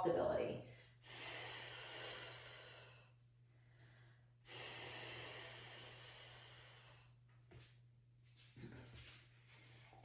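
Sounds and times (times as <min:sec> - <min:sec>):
woman breathing hard: 0:00.6 - 0:07.2.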